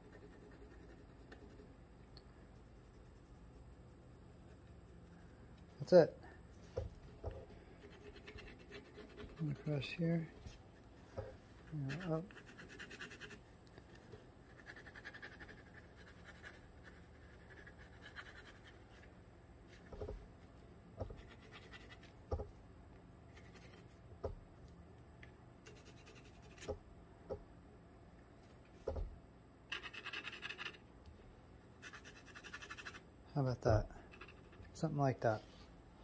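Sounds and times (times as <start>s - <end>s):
drawing tool scratching on bark: 0.0s - 1.7s, 7.8s - 10.9s, 11.6s - 13.4s, 14.5s - 18.8s, 21.1s - 22.1s, 23.3s - 24.0s, 25.7s - 26.7s, 29.7s - 30.8s, 31.8s - 33.0s, 34.1s - 34.8s
soft knocks: 28.8s - 29.1s.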